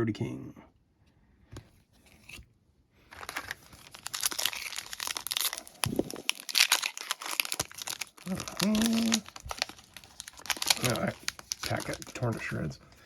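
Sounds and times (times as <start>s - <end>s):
card pack wrapper tearing: 3.1s - 12.7s.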